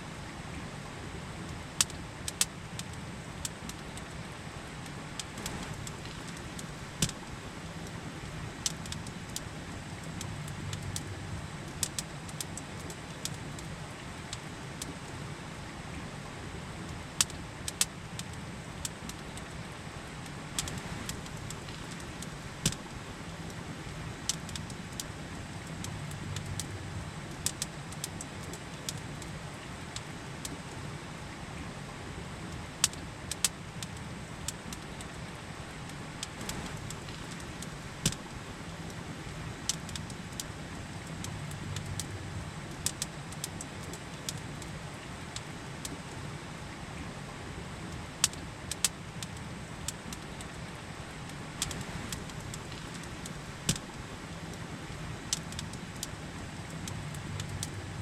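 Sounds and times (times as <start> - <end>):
campfire crackling: 0.0 - 58.0.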